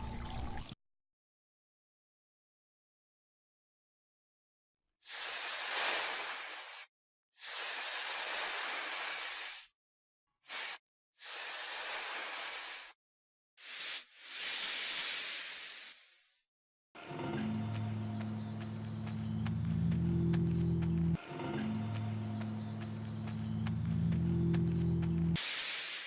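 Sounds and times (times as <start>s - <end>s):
hissing bursts: 5.1s - 9.7s, 10.5s - 13.0s, 13.6s - 16.4s, 25.4s - 26.0s.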